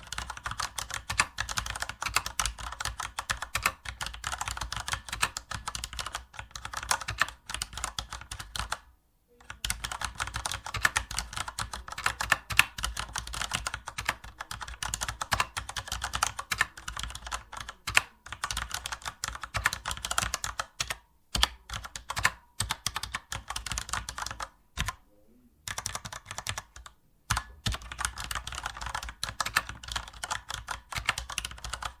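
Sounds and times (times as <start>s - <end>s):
computer keyboard typing: 0.0s - 25.0s, 25.6s - 32.0s.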